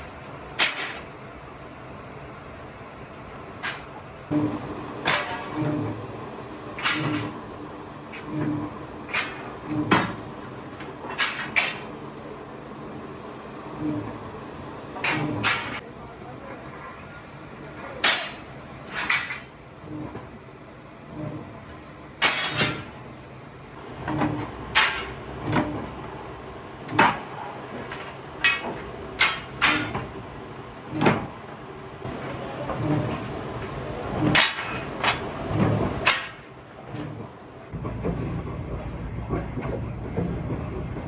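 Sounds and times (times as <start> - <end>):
machine rumble: 0.0 - 41.0
steel plate clanking: 24.0 - 26.0, 26.9 - 30.2.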